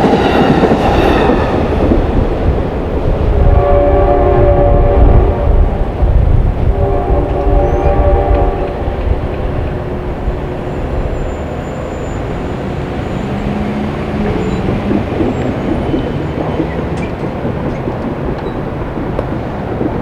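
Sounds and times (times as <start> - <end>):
passing train rumble: 0.0 - 20.0
train horn chord: 3.1 - 12.4.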